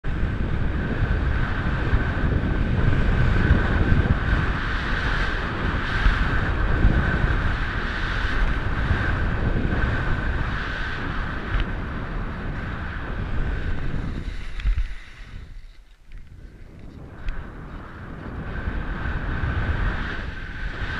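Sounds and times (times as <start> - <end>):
wind rushing over microphone: 0.0 - 20.9
skis hissing over snow: 13.4 - 17.1.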